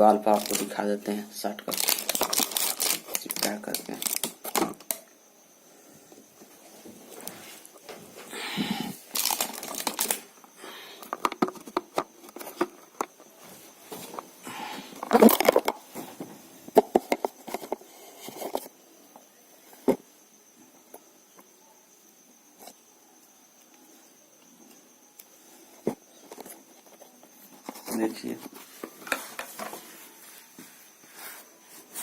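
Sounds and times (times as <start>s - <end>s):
rustling and crinkling: 0.0s - 5.0s, 6.0s - 8.3s, 9.0s - 20.0s, 24.7s - 32.0s.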